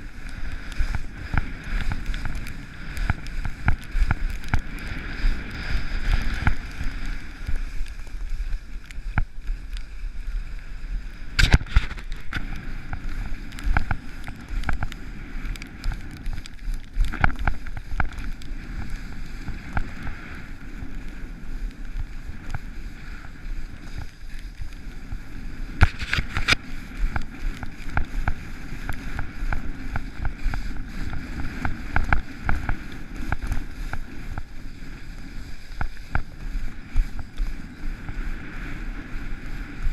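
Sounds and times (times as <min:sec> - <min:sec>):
skis scraping on snow: 0:00.0 - 0:39.9
wind rumbling on microphone: 0:00.0 - 0:39.9.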